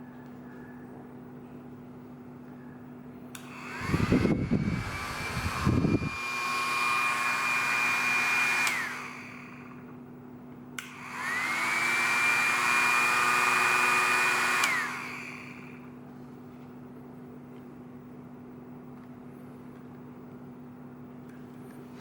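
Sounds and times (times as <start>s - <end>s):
hair dryer switch click: 3.3s - 6.1s, 7.7s - 9.1s, 10.8s - 11.8s, 14.2s - 15.3s
hair dryer motor whining: 3.3s - 9.9s, 10.8s - 16.0s.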